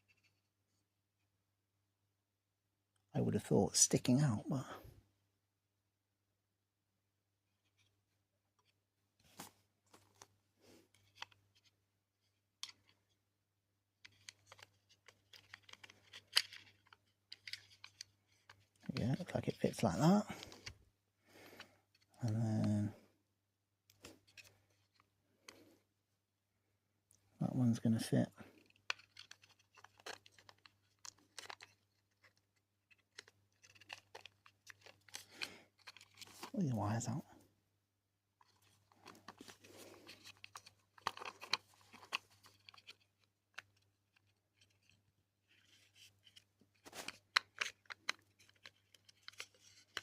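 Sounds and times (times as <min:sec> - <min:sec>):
plastic parts clicking: 0:14.0 - 0:19.3, 0:28.7 - 0:36.5, 0:40.1 - 0:45.0, 0:45.6 - 0:50.0.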